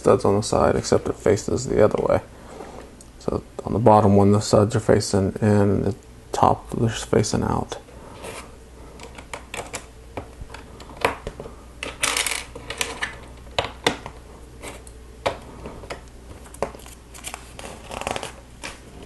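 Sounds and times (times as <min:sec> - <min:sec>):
plastic pieces rattling: 0:11.8 - 0:13.2.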